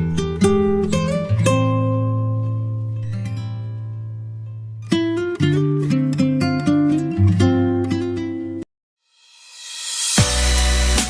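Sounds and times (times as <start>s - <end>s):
acoustic guitar strumming chords: 0.0s - 8.6s.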